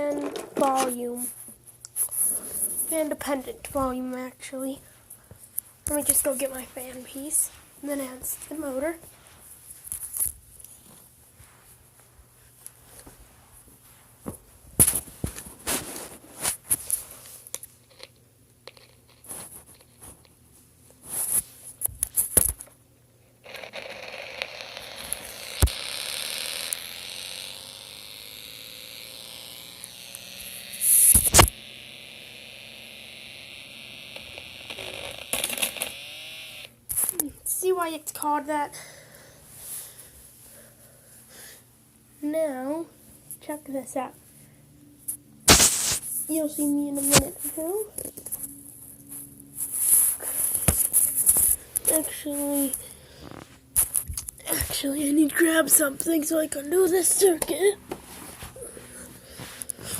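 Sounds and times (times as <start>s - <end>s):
high electronic buzz: 23.5s - 36.8s, 45.4s - 46.1s.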